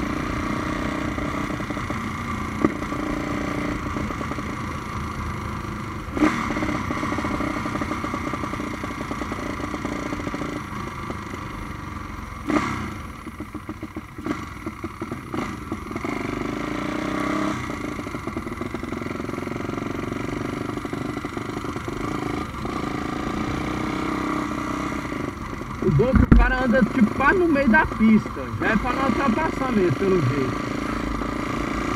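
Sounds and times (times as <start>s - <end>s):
motorcycle engine revving: 0.0s - 31.9s
loud engine pops: 2.6s - 2.8s, 25.8s - 27.0s.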